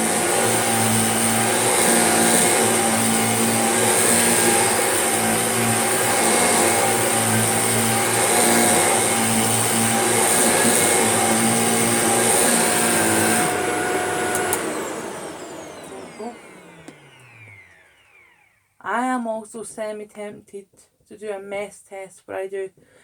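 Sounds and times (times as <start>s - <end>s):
vacuum cleaner motor whine: 0.0s - 18.7s.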